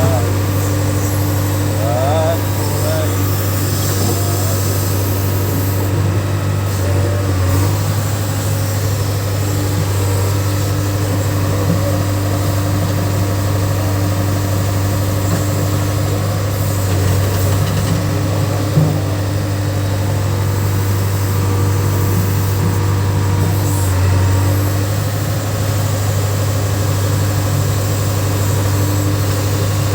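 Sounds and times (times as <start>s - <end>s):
diesel engine running: 0.0s - 29.9s.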